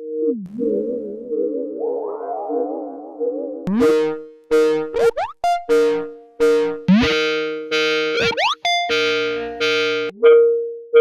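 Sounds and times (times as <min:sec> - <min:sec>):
synthesized ringtone melody: 0:03.7 - 0:11.0.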